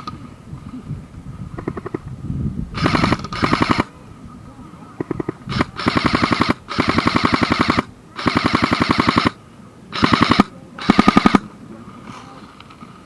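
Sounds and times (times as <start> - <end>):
airsoft rifle firing bursts: 2.8 - 3.9, 5.5 - 11.5.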